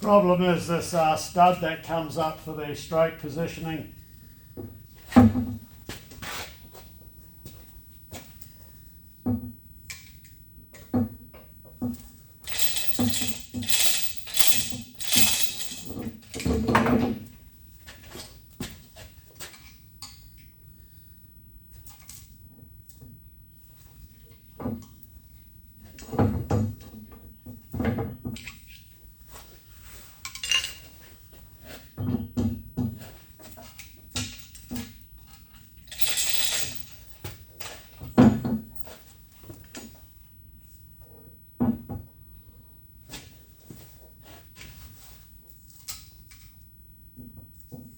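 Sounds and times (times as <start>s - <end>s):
metallic knocks and clinks: 12.5s - 16.3s, 35.9s - 37.1s.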